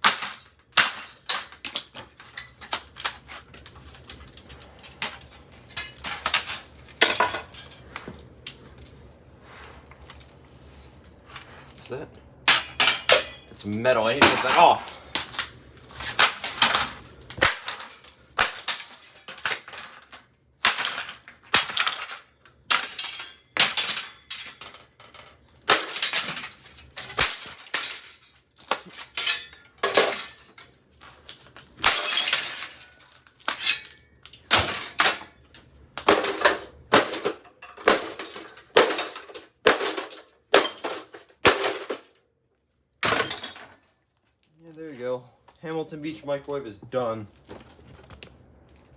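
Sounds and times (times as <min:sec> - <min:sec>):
glass breaking: 0:00.0 - 0:07.9, 0:12.5 - 0:25.0, 0:25.6 - 0:30.7, 0:31.8 - 0:35.4, 0:36.0 - 0:42.2, 0:43.0 - 0:43.9
parts clattering: 0:00.0 - 0:09.1, 0:11.2 - 0:42.2, 0:43.0 - 0:44.5.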